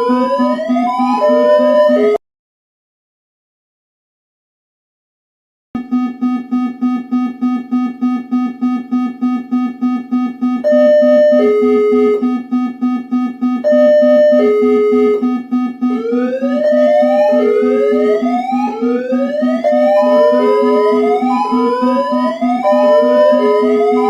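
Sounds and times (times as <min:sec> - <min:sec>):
pulsing electronic alarm buzz: 0:00.0 - 0:02.2, 0:05.8 - 0:24.0
falling two-note alarm tone: 0:13.2 - 0:24.0
rising siren-like sweeps: 0:15.8 - 0:24.0.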